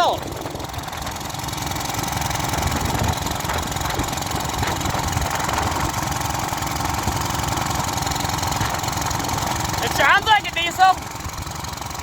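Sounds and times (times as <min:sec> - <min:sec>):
small engine running roughly: 0:00.0 - 0:12.0.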